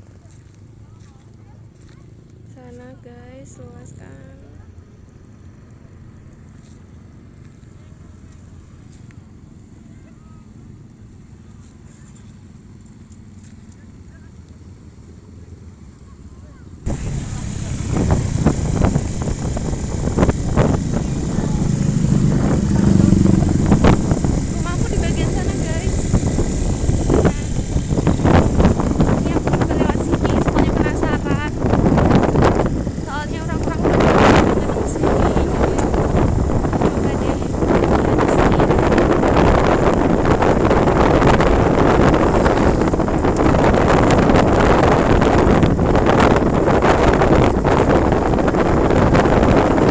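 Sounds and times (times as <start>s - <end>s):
engines rumbling: 0.0s - 49.9s
wind buffeting microphone: 16.8s - 49.9s.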